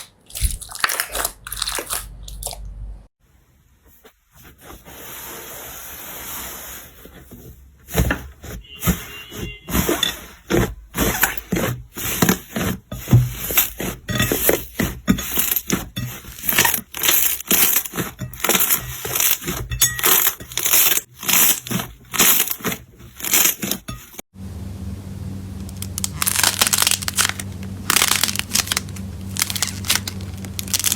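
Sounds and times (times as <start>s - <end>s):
slime crackling and crunching: 0.0s - 2.6s, 11.0s - 24.2s, 25.6s - 30.9s.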